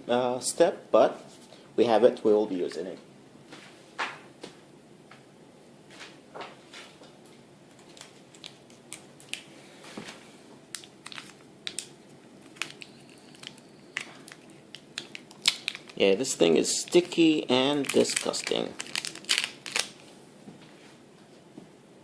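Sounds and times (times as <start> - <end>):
tools and packaging clicking and rustling: 12.4 - 16.0.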